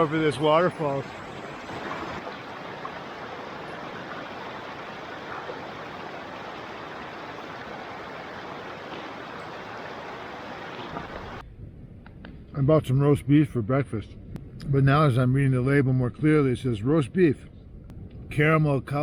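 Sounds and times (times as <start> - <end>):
waterfall rushing: 0.0 - 11.4.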